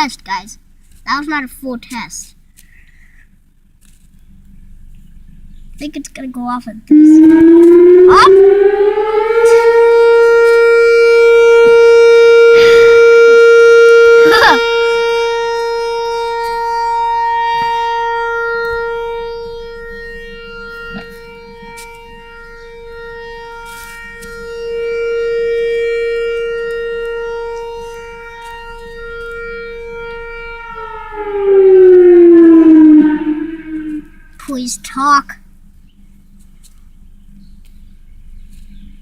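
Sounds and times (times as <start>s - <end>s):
tornado warning siren wailing: 6.9s - 35.2s.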